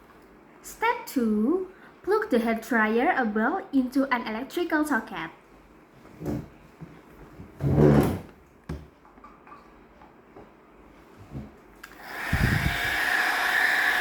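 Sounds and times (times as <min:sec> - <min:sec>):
hair dryer blowing: 0:11.8 - 0:14.0.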